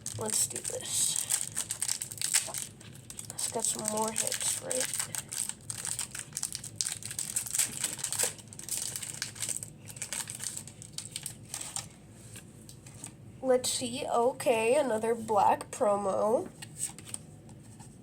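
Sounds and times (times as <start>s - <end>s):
foil wrapper crinkling: 0.0s - 12.4s.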